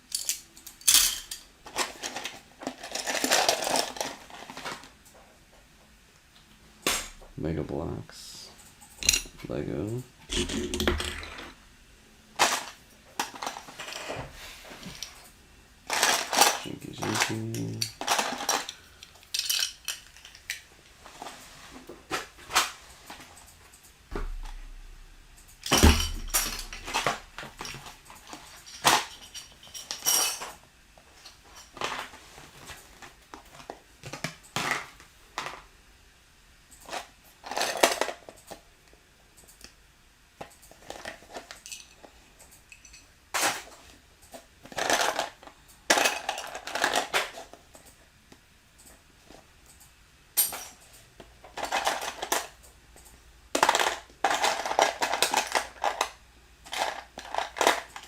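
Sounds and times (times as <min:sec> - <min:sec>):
plastic bricks clicking and clattering: 0:00.1 - 0:05.0, 0:15.9 - 0:20.6, 0:44.6 - 0:47.4, 0:51.5 - 0:52.5, 0:53.5 - 0:58.0.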